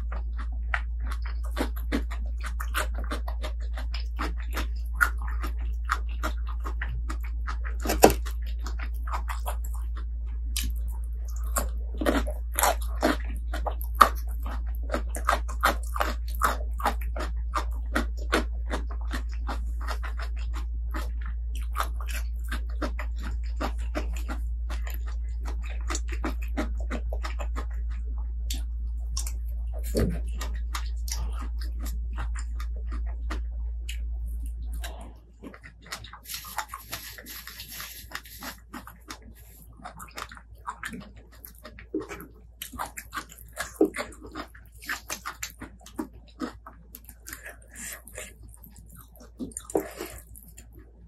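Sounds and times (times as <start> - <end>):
low hum: 0.0 - 38.4
person chewing and slurping: 0.0 - 51.0.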